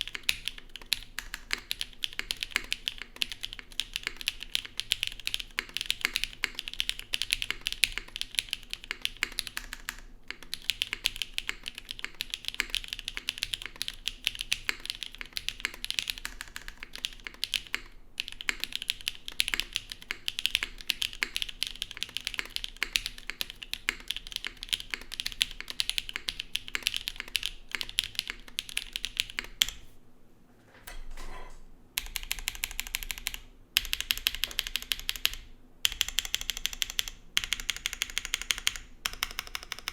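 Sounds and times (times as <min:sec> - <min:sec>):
mechanical keyboard typing: 0:00.0 - 0:29.8, 0:32.0 - 0:39.9.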